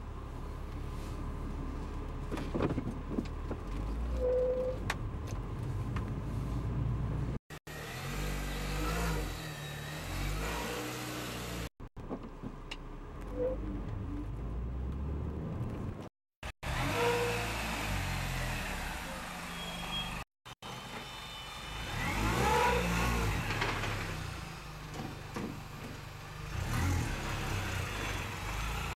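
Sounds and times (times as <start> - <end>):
odd car noise: 7.6 - 28.9
car engine accelerating: 12.8 - 20.0, 21.7 - 25.0, 25.9 - 28.9.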